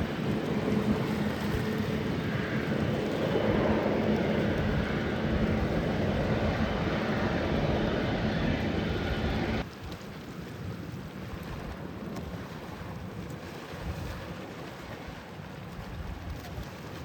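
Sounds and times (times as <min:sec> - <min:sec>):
jet engines running: 0:00.0 - 0:09.7
wind noise: 0:00.0 - 0:09.7.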